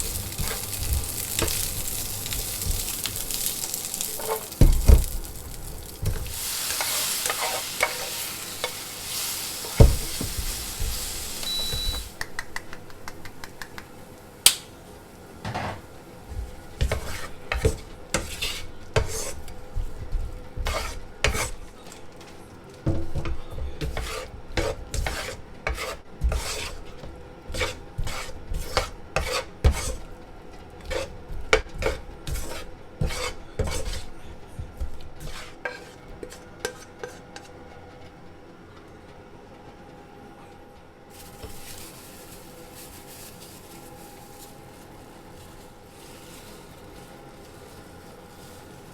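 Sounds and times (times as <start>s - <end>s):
food sizzling in a frying pan: 0.0s - 12.2s, 41.1s - 48.9s
utensils clinking against pans: 0.0s - 13.8s, 15.4s - 22.2s.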